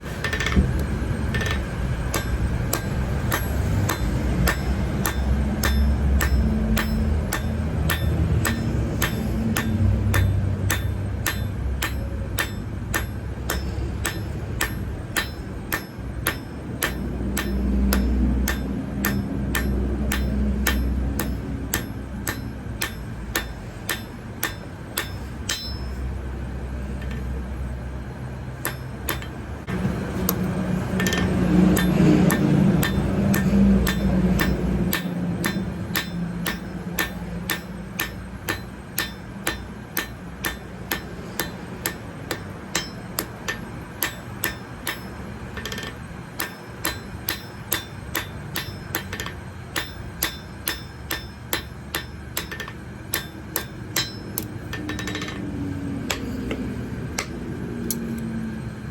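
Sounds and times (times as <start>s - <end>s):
hammer striking metal on anvil: 0.0s - 58.4s.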